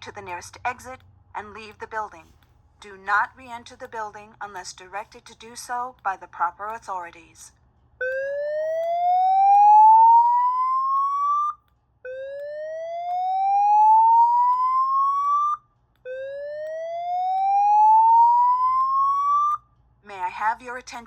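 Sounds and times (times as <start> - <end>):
rising whoop alarm tone: 8.1 - 19.6.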